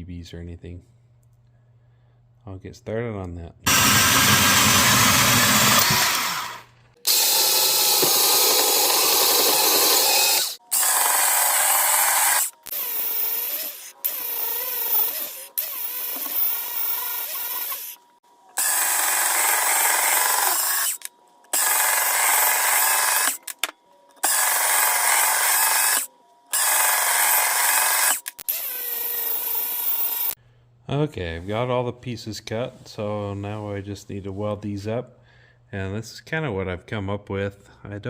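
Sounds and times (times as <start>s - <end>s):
power tool grinding through steel rod: 3.7s - 18.0s, 18.6s - 23.5s, 24.2s - 30.4s.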